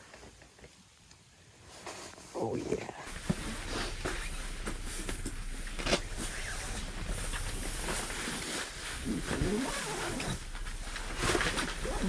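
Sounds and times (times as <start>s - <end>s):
wind rumbling on microphone: 3.0s - 12.0s.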